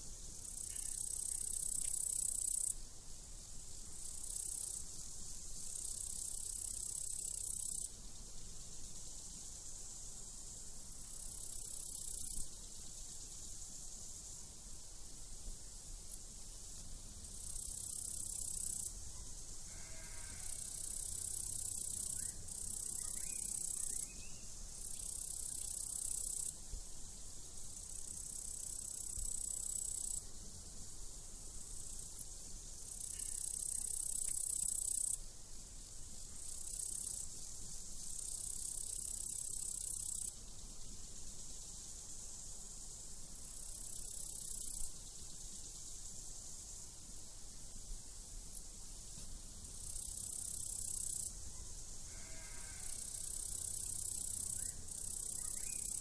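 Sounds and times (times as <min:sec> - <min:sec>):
steady hiss: 0:00.0 - 0:56.0
crickets trilling: 0:00.2 - 0:02.8, 0:03.4 - 0:08.0, 0:08.6 - 0:14.8, 0:15.6 - 0:56.0
sheep bleating: 0:19.7 - 0:20.5, 0:52.2 - 0:52.9.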